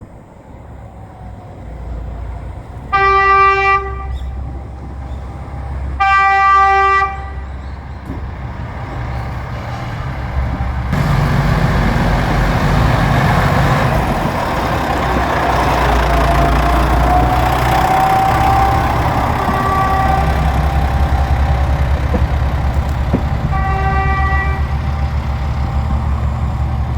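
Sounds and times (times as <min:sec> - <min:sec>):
diesel engines passing: 0:00.0 - 0:26.9
train horn blasts: 0:02.9 - 0:04.5, 0:06.0 - 0:07.6, 0:16.1 - 0:20.9, 0:23.4 - 0:24.8
wheels rolling on rails: 0:07.8 - 0:26.9.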